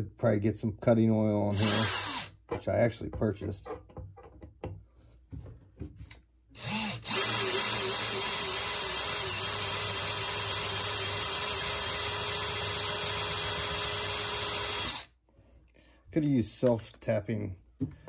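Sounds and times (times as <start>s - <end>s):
power drill boring a hole: 1.5s - 2.3s, 6.6s - 15.1s.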